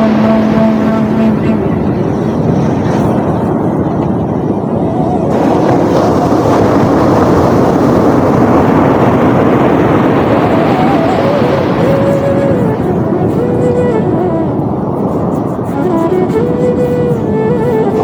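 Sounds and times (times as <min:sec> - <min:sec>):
steady low tone: 0:00.0 - 0:05.4
sea waves rushing: 0:00.0 - 0:18.0.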